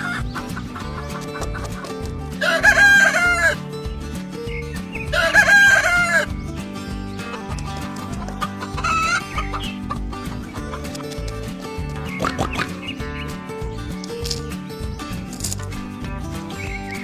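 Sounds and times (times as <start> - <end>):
background music: 0.0 - 17.0
rooster crowing: 2.4 - 3.6, 5.1 - 6.3.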